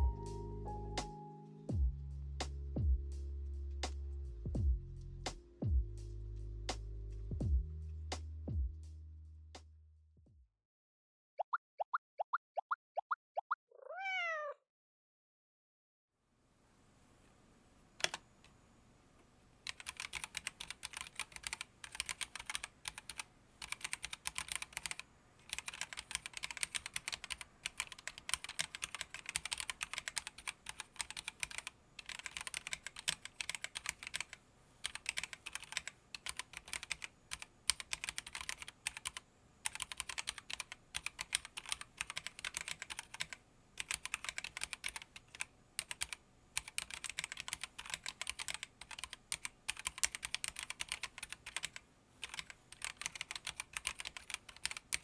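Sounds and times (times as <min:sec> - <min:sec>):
mechanical keyboard typing: 0:18.0 - 0:18.2, 0:19.6 - 0:55.0.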